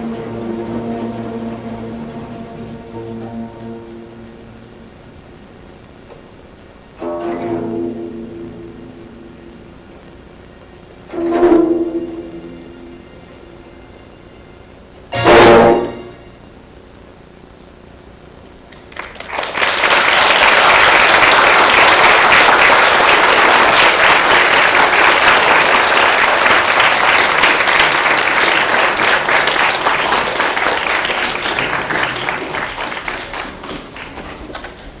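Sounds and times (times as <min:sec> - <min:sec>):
audience applauding: 0:18.7 - 0:35.0.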